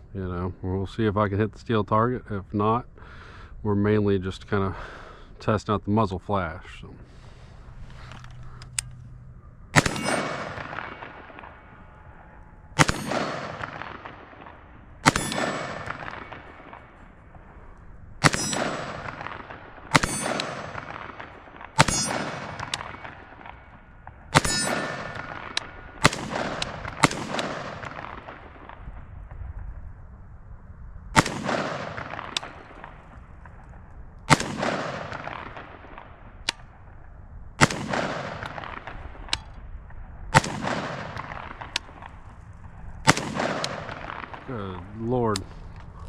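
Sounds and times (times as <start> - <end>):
pistol gunshots with echo: 9.7 - 17.6, 18.2 - 29.1, 31.1 - 33.6, 34.3 - 36.8, 37.6 - 39.6, 40.3 - 42.3, 43.0 - 45.6.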